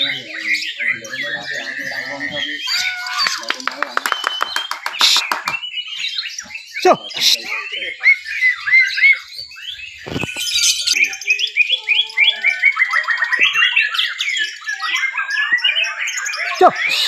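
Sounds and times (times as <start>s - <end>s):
birds singing rapid whistled phrases: 0.0s - 17.0s.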